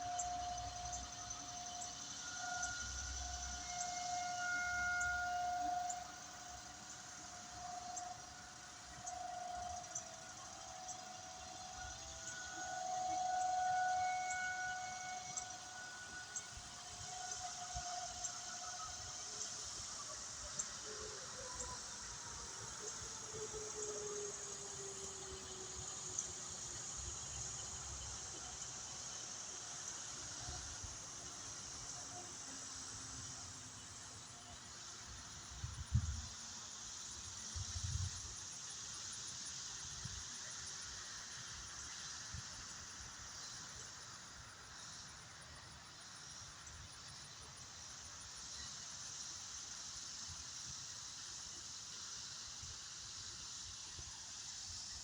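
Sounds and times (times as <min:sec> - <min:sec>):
steady high hiss: 0:00.0 - 0:55.0
warning siren winding down: 0:00.2 - 0:28.4.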